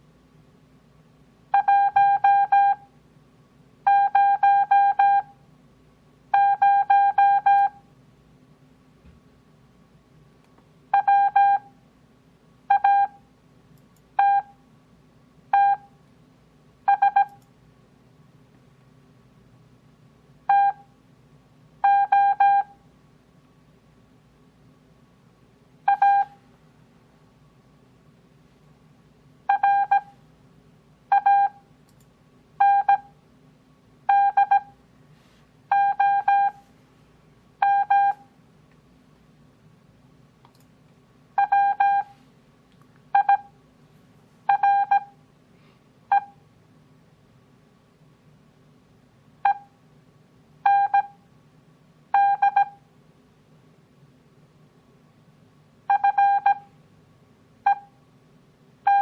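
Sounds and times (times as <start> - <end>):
morse code beeps: 1.6 - 2.8, 3.9 - 5.3, 6.4 - 7.8, 11.0 - 11.7, 12.7 - 13.2, 14.2 - 14.5, 15.6 - 15.9, 16.9 - 17.4, 20.5 - 20.8, 21.8 - 22.8, 25.9 - 26.4, 29.5 - 30.1, 31.1 - 31.6, 32.6 - 33.1, 34.1 - 34.8, 35.7 - 36.6, 37.6 - 38.2, 41.4 - 42.2, 43.2 - 43.5, 44.5 - 45.1, 50.7 - 51.2, 52.2 - 52.8, 55.9 - 56.7, 57.7 - 57.9.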